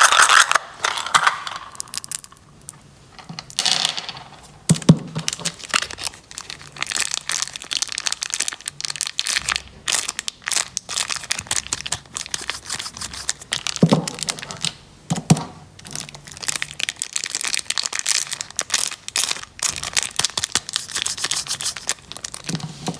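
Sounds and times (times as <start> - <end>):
plastic wrappers crinkling: 5.2 - 14.7, 15.8 - 22.9.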